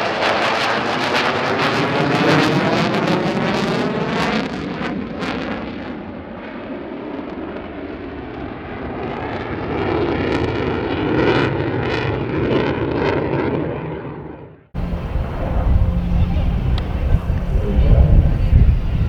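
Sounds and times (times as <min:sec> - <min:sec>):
jet passing with crackling roar: 0:00.0 - 0:19.0
low rumble: 0:14.8 - 0:19.0.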